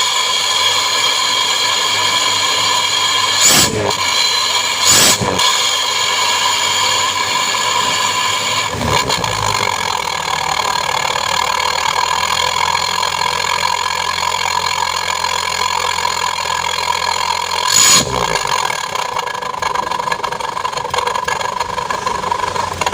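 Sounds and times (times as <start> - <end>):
engine idling through exhaust: 0.0 - 22.9.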